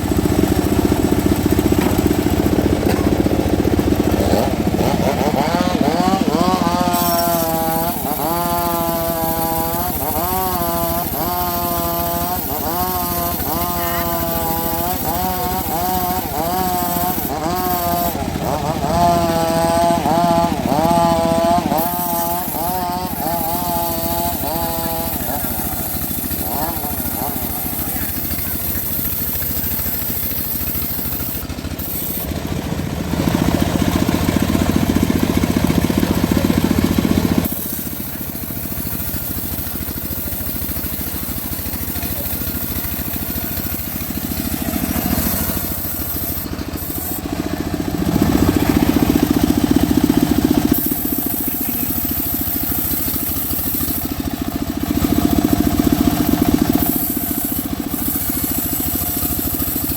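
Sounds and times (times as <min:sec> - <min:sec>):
engine-driven sawmill sawing wood: 0:00.0 - 0:59.9.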